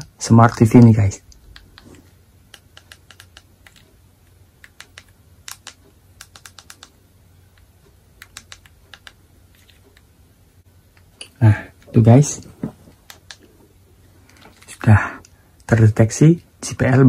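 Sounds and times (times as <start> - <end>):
buttons clicking: 7.6 - 10.1.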